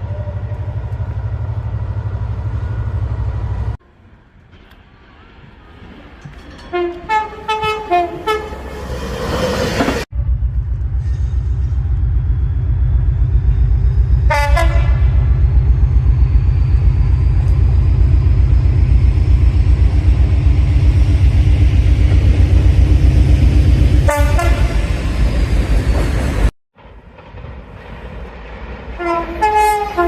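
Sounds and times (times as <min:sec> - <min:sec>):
train rumbling: 0:00.0 - 0:30.0
train horn toots: 0:06.7 - 0:08.7, 0:14.3 - 0:15.2, 0:24.0 - 0:24.8, 0:29.0 - 0:30.0.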